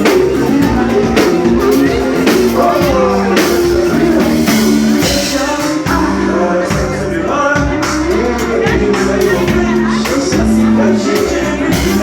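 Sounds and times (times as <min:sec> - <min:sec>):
band with steady beat: 0:00.0 - 0:12.0
person singing: 0:00.0 - 0:12.0.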